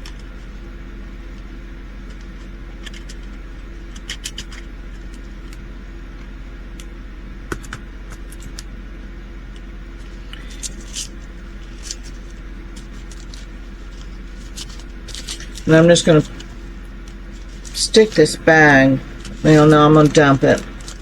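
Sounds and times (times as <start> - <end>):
low background hum: 0.0 - 21.0
plastic bags clicking and crinkling: 10.1 - 18.4, 19.0 - 21.0.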